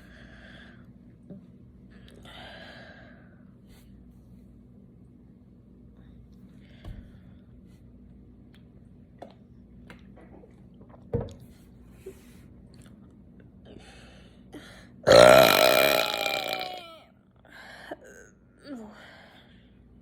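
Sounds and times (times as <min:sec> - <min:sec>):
person burping: 0:15.1 - 0:17.0.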